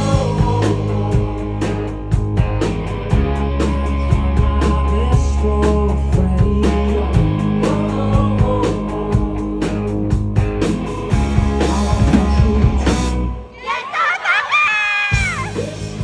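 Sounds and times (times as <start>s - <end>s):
person singing: 0.0s - 1.7s
drum kit with cymbals: 0.0s - 13.3s, 15.1s - 16.0s
electric guitar: 0.0s - 13.4s
bass guitar: 0.0s - 13.5s, 15.1s - 16.0s.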